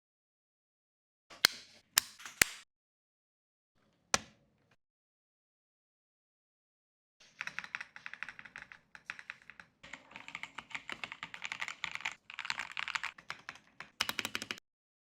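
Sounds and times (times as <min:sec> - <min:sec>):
fast typing on mechanical keyboard: 0:07.4 - 0:14.6.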